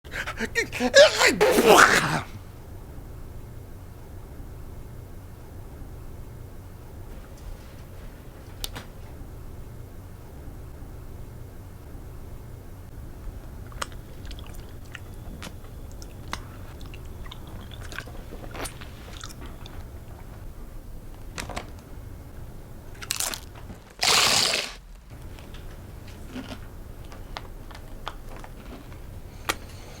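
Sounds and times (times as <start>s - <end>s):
chips being crunched: 23.0s - 24.8s.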